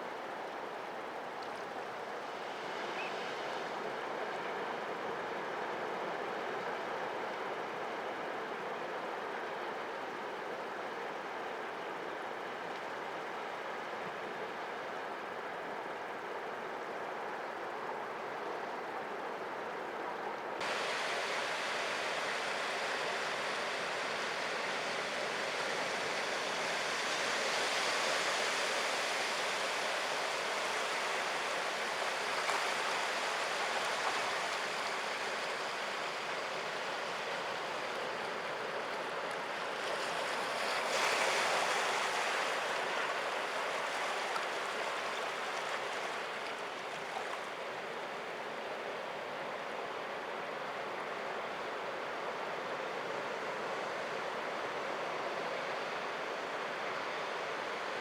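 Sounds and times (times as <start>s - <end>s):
surf washing over rocks: 20.6s - 48.1s.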